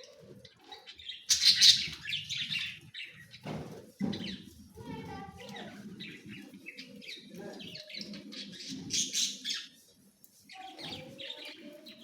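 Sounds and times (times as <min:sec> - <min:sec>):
parrot chirping and calling: 0:01.3 - 0:02.2.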